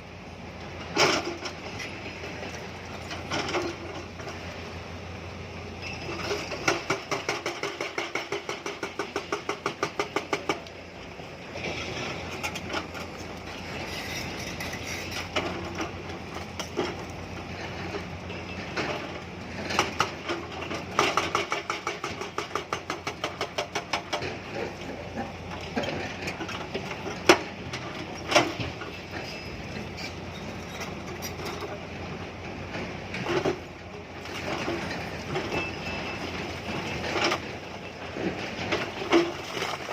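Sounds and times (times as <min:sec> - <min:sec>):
hydraulic rock breaker hammering stone: 0:06.2 - 0:10.7, 0:17.8 - 0:31.8.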